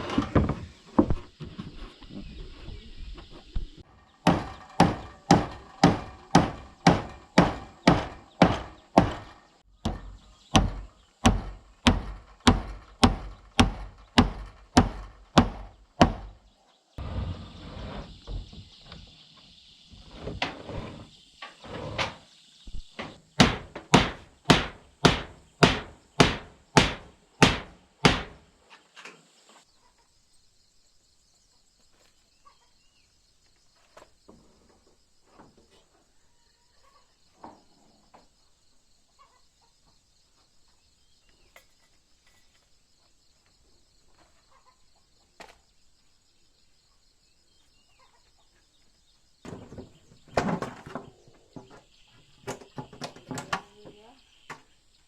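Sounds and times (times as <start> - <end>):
hammer blows: 23.0 - 28.4.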